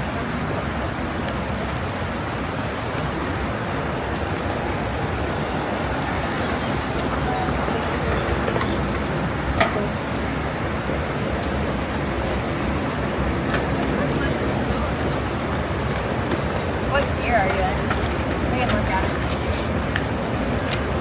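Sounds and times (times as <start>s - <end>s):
roar of rushing water: 3.6s - 9.1s.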